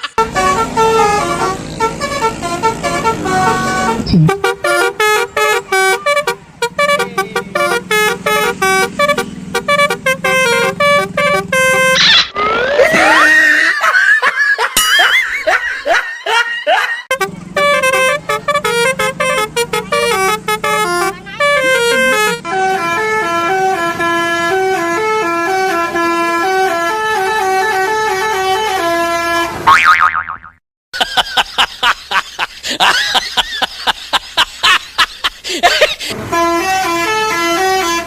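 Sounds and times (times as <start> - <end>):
musical bus horn tune: 0.0 - 13.3, 17.0 - 29.7, 35.6 - 38.0.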